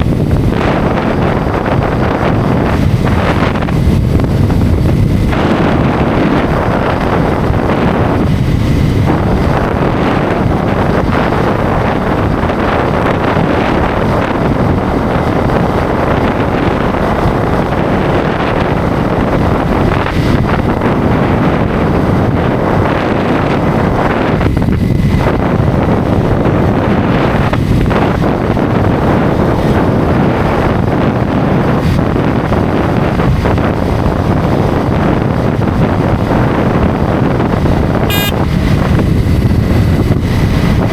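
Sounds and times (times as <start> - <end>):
wind buffeting microphone: 0.0 - 40.9
road noise: 37.6 - 40.9
motorcycle engine: 38.1 - 38.6.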